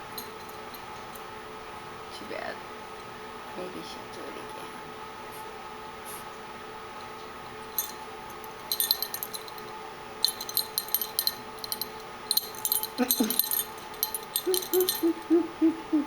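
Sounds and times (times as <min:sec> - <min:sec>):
collar bell jingling: 0:07.7 - 0:15.5.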